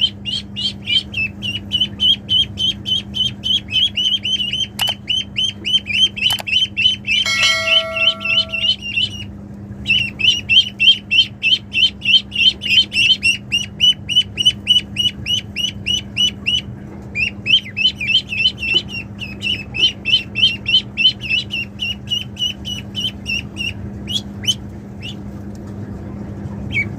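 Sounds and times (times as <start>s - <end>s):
ducklings peeping: 0.0s - 25.4s, 26.6s - 26.9s.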